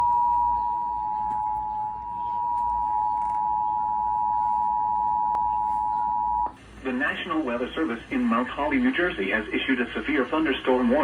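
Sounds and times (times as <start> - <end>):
two-tone alert signal: 0.0 - 6.5.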